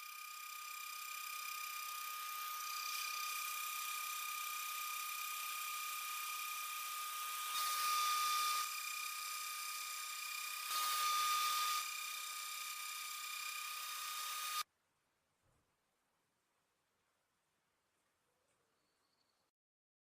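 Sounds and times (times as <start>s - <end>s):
router spindle whining: 0.0s - 14.6s
end mill cutting aluminium: 2.0s - 14.6s.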